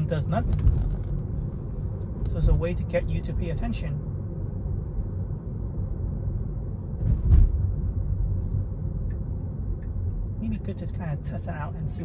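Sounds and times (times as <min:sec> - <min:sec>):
road and tyre rumble: 0:00.0 - 0:12.0
short thump: 0:07.0 - 0:08.0.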